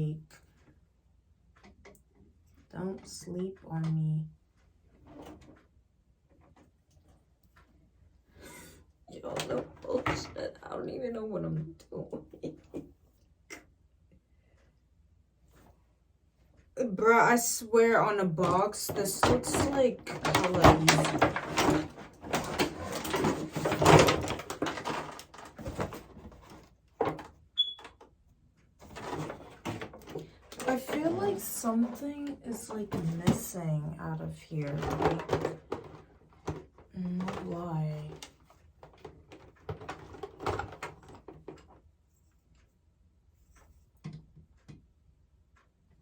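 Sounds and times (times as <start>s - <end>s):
parts clattering and rustling: 18.1s - 28.0s, 28.8s - 33.6s, 34.6s - 41.8s.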